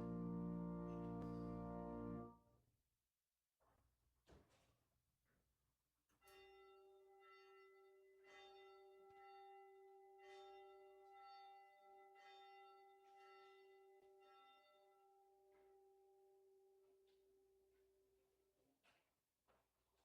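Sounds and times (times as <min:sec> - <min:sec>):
faint bell ringing: 0:06.2 - 0:17.0.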